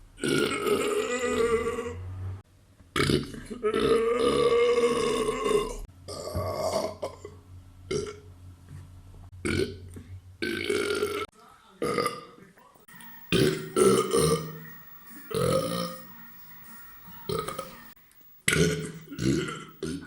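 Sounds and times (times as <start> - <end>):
person belching: 0.2 - 2.0, 3.0 - 8.2, 9.4 - 9.8, 10.4 - 12.3, 13.3 - 14.6, 15.3 - 16.0, 18.4 - 20.0.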